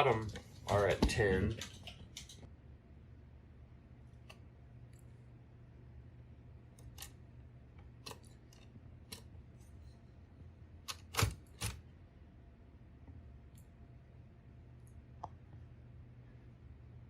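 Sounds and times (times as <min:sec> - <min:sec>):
typewriter carriage clicks: 0:10.9 - 0:11.8.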